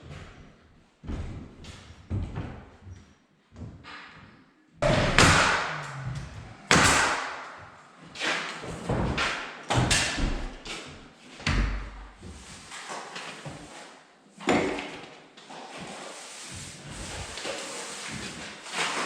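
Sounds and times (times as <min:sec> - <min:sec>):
thuds and knocks echoing: 0:04.8 - 0:07.9.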